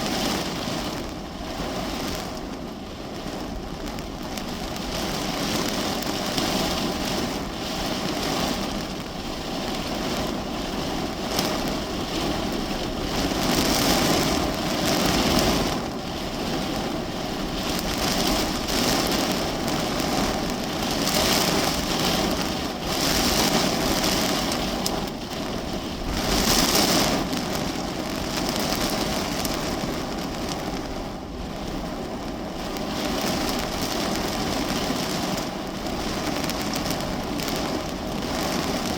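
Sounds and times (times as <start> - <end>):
rain on a car roof: 0.0 - 38.9.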